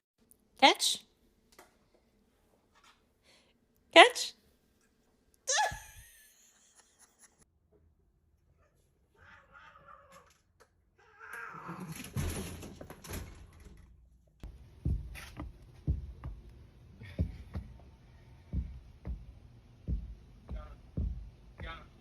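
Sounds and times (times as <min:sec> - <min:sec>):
cat meowing: 0:09.1 - 0:10.4
sharp low thumps: 0:14.4 - 0:17.8, 0:18.5 - 0:21.9.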